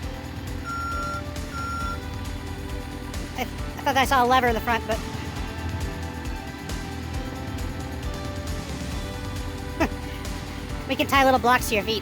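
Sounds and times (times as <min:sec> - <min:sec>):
background music with held tones: 0:00.0 - 0:12.0
excavator engine idling: 0:00.0 - 0:12.0.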